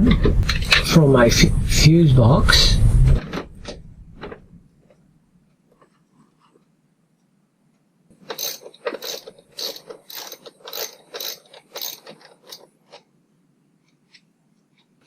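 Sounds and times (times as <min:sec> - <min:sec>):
hand ratchet clicking: 0:08.2 - 0:12.6.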